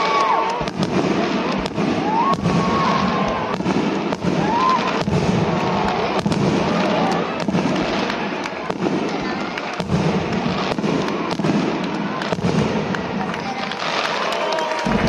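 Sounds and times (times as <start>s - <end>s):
rising firework whistles: 0.0s - 8.6s, 12.1s - 15.0s
fireworks bangs and crackling: 0.0s - 15.0s.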